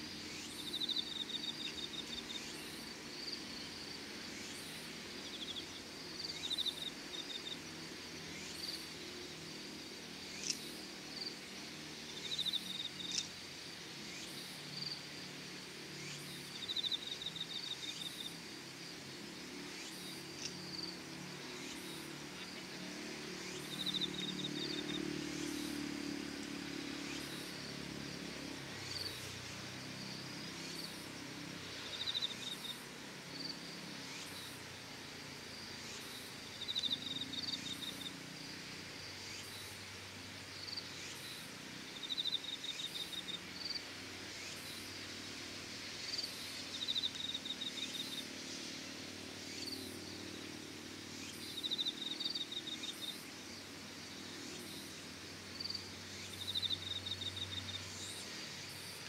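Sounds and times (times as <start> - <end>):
higher insect chirps: 0.0 - 59.0
insects trilling: 0.0 - 59.0.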